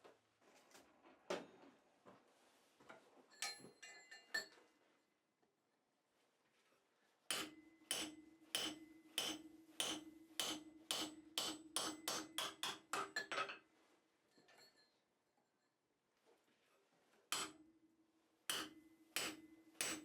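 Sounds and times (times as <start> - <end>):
hammer ringing on anvil: 7.3 - 13.2, 17.4 - 17.6, 18.5 - 20.0.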